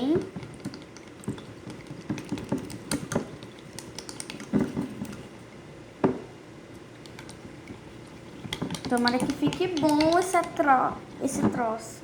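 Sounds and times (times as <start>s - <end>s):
spoon stirring sauce in bowl: 0.0s - 5.4s, 6.8s - 10.7s.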